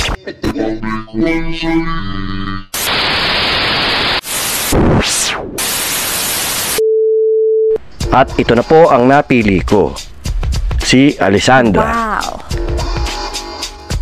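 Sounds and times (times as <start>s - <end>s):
white noise static hiss: 2.8s - 5.0s, 5.6s - 6.8s.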